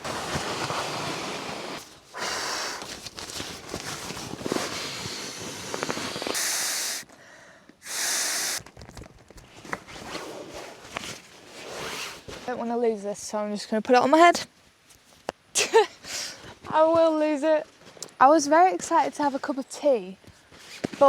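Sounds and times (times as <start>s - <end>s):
rustling and crinkling of fabric: 0.0s - 2.2s, 2.8s - 6.4s, 8.7s - 12.9s
short loud hissing whooshes: 4.7s - 7.1s, 7.8s - 8.6s.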